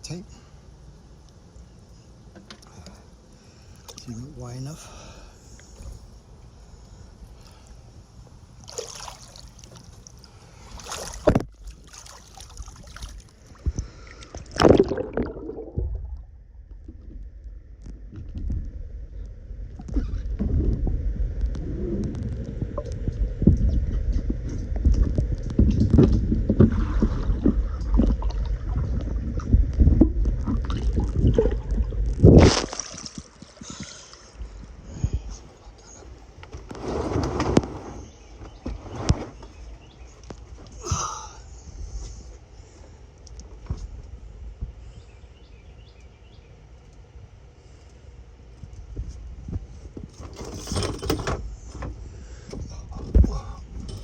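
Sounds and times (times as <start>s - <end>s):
pool water sloshing and gurgling: 8.6s - 17.2s, 19.8s - 34.8s.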